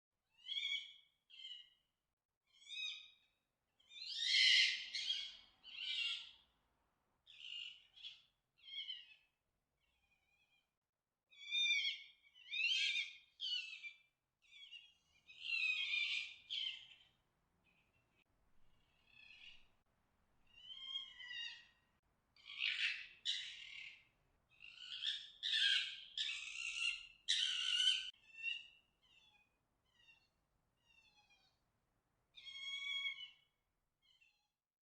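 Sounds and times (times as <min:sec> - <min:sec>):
fox screeching: 0:24.8 - 0:31.5, 0:32.4 - 0:33.4
fox squeaking and whining: 0:24.8 - 0:31.5, 0:32.4 - 0:33.4.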